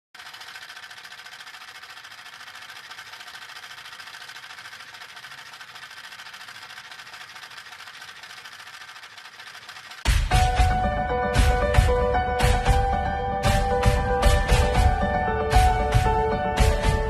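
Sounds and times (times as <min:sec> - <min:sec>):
jigsaw blade rattling: 0:00.2 - 0:10.1.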